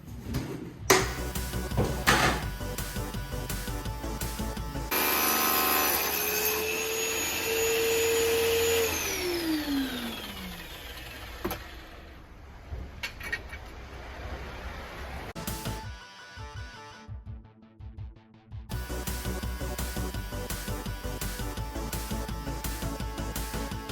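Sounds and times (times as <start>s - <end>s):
power tool motor whining: 4.9s - 12.0s.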